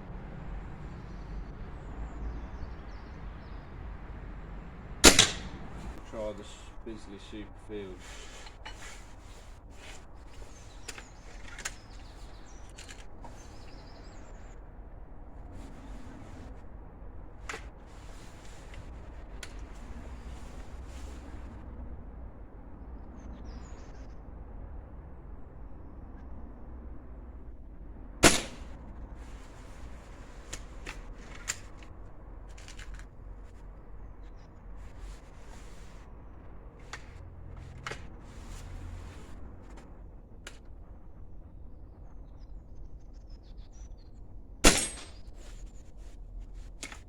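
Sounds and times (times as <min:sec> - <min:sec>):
birds chirping faintly: 0:00.0 - 0:16.6, 0:17.4 - 0:21.6
steady low rumble: 0:00.0 - 0:46.8
air rifle shot: 0:05.0 - 0:06.0, 0:28.2 - 0:28.8, 0:44.6 - 0:45.2.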